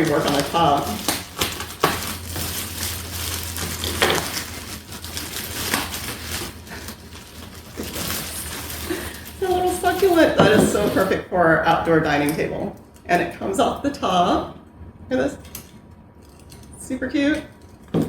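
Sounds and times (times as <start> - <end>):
packing material rustling: 0.0 - 11.2.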